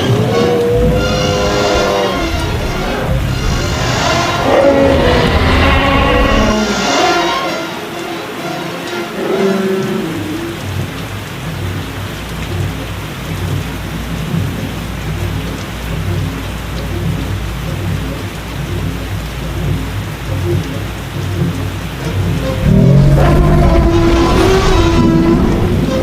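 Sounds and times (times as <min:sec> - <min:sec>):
low thunder rumbling: 0:00.0 - 0:06.8, 0:22.6 - 0:26.0
heavy rain: 0:00.0 - 0:26.0.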